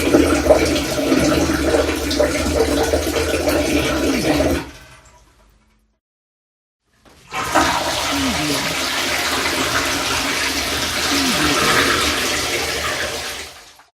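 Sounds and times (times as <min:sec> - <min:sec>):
water gurgling: 0:00.0 - 0:04.8, 0:07.3 - 0:13.9
water rushing: 0:07.5 - 0:13.7.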